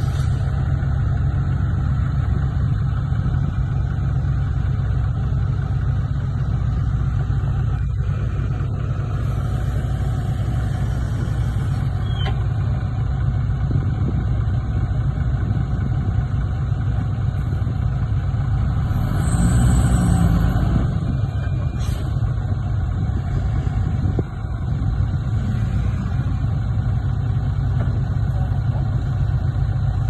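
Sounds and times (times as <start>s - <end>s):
heavy diesel engine running: 0.0s - 30.0s
short high squeal: 12.0s - 12.4s.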